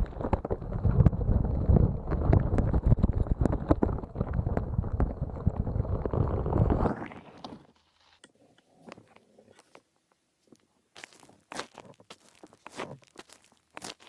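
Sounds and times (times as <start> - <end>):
wet crackles and clicks: 0.0 - 8.3.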